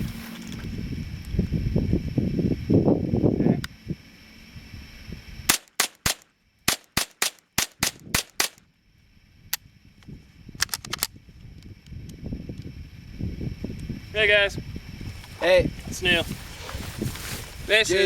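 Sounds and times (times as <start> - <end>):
sharp short cracks: 5.5 - 8.6.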